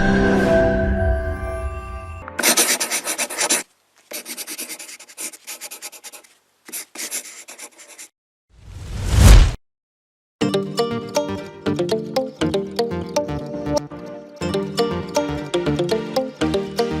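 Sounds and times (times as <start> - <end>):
music: 0.0 - 2.4, 10.4 - 17.0
rough scratching strokes: 2.4 - 8.1.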